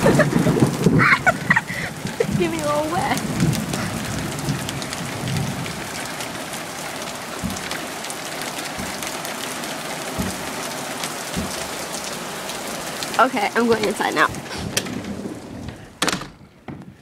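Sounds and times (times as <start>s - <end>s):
raindrops ticking near microphone: 0.0s - 17.0s
steady rain falling: 0.0s - 17.0s
dull knocks: 7.3s - 12.0s.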